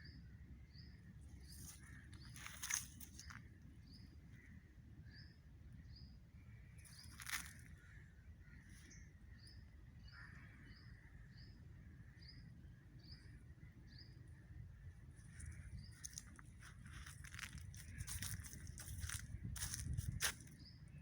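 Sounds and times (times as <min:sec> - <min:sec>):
low rumble of wind: 0:00.0 - 0:21.0
footsteps crackling on forest floor: 0:01.4 - 0:03.5, 0:06.8 - 0:08.0, 0:15.2 - 0:20.7.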